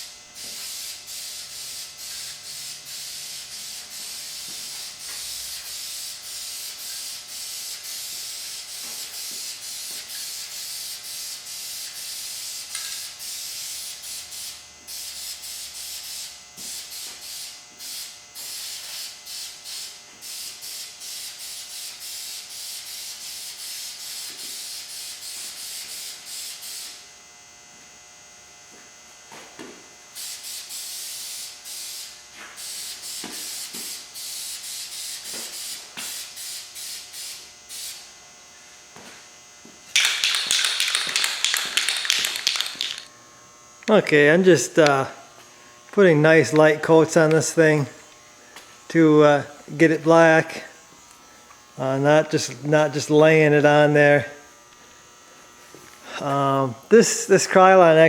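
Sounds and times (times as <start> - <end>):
spray paint can hissing: 0.4 - 22.2, 39.9 - 43.1.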